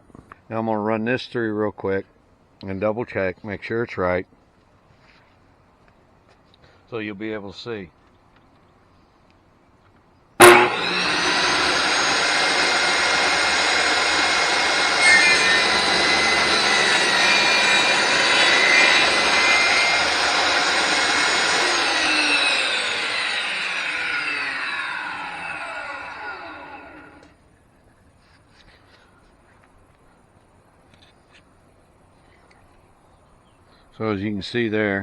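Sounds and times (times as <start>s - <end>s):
saw cutting wood: 10.4s - 27.3s
table saw motor running: 10.4s - 27.3s.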